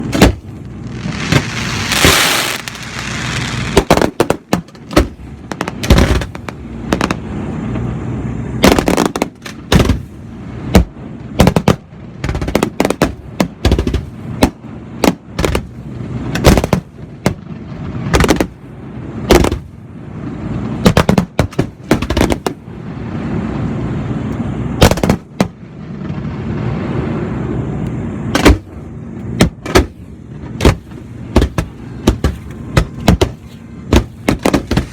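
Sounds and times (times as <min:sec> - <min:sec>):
fireworks bangs: 0:00.0 - 0:07.5, 0:08.6 - 0:18.7, 0:19.3 - 0:19.8, 0:20.6 - 0:22.7, 0:24.7 - 0:27.3, 0:28.3 - 0:34.9
low rumble: 0:00.0 - 0:20.9.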